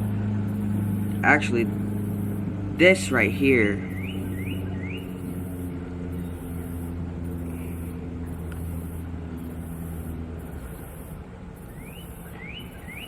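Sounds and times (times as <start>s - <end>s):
low engine hum: 0.0s - 13.0s.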